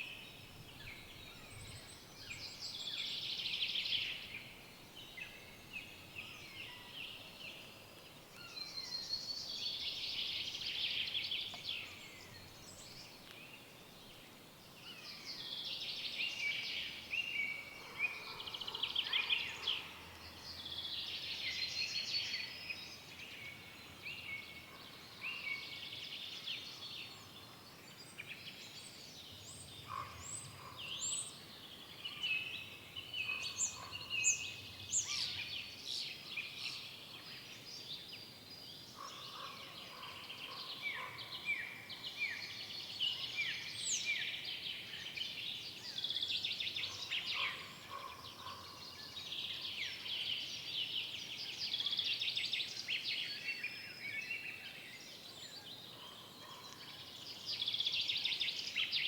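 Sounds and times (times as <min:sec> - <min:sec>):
faint background hiss: 0:00.0 - 0:59.0
songbirds singing: 0:00.0 - 0:59.0.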